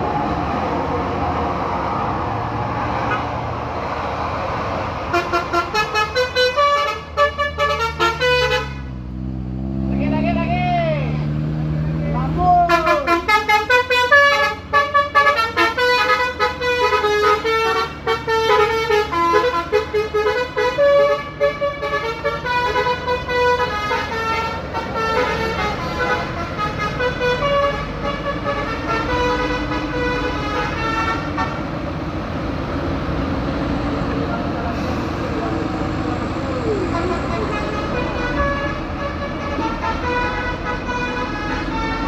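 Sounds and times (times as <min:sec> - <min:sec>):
bus rumble: 0:00.0 - 0:42.0
musical bus horn melody: 0:05.1 - 0:09.1, 0:12.6 - 0:31.8, 0:36.7 - 0:42.0.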